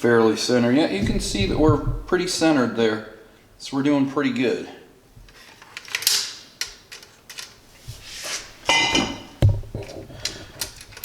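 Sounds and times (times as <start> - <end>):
dull thump: 1.0 - 2.5.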